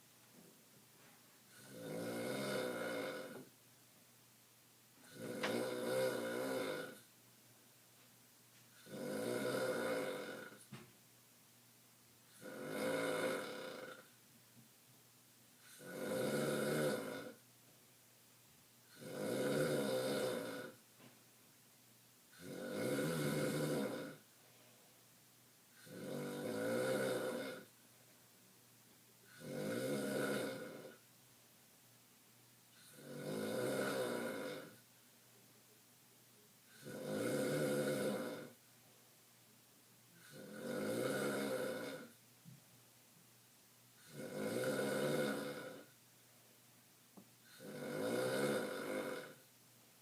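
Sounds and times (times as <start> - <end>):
person snoring: 1.5 - 3.5, 5.0 - 7.1, 8.8 - 10.7, 12.3 - 14.1, 15.6 - 17.4, 18.9 - 20.8, 22.3 - 24.2, 25.7 - 27.7, 29.3 - 31.0, 32.7 - 34.8, 36.7 - 38.6, 40.2 - 42.2, 44.0 - 45.9, 47.4 - 49.5.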